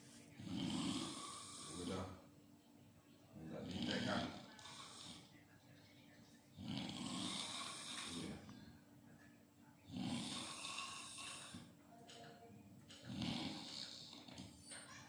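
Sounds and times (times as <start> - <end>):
person snoring: 0.4 - 2.1, 6.6 - 8.4, 9.9 - 11.7, 13.1 - 14.4.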